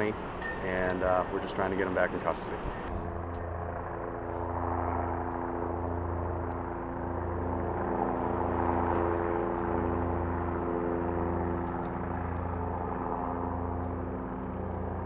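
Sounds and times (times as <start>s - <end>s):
mechanical engine drone: 0.0s - 15.0s.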